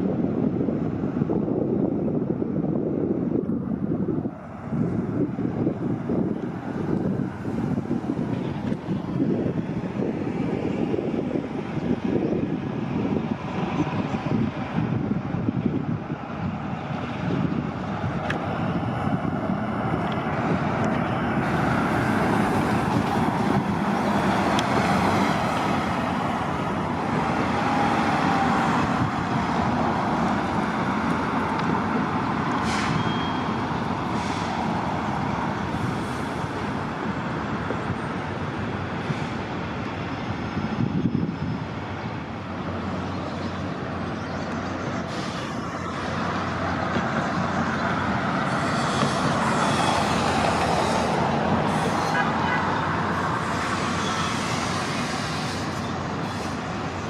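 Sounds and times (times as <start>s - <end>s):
bus engines and traffic: 0.0s - 57.0s
air brake hisses: 32.6s - 33.5s, 34.1s - 34.7s, 45.1s - 45.6s.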